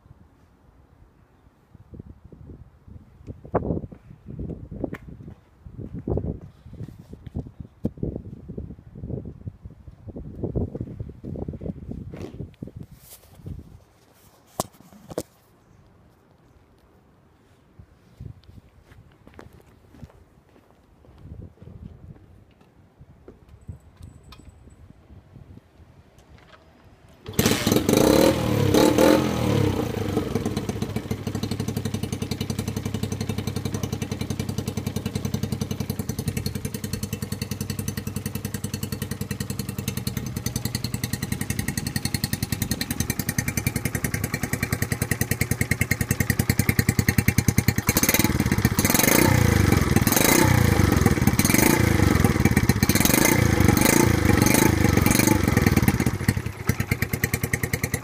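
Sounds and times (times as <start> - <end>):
motorcycle engine idling and revving: 27.1 - 58.0.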